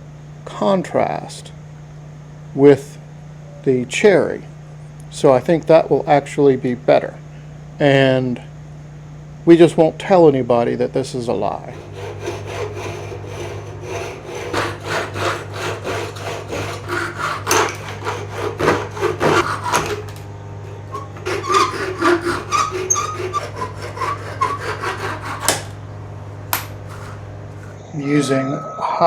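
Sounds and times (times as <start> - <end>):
hand tool rasping on wood: 11.6 - 25.8, 26.8 - 27.8
short squeaks: 20.6 - 21.9, 22.5 - 23.6.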